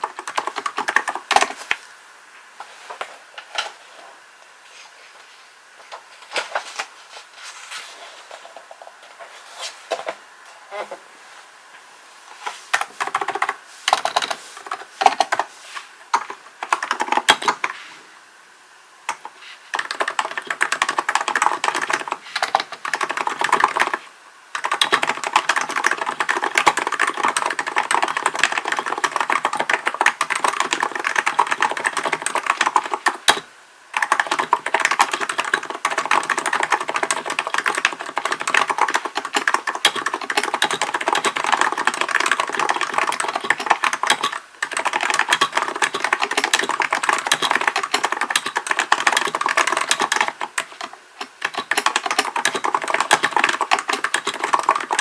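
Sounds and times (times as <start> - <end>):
keyboard typing: 0.0 - 1.6, 12.7 - 15.5, 16.1 - 17.8, 19.1 - 24.0, 24.6 - 55.0.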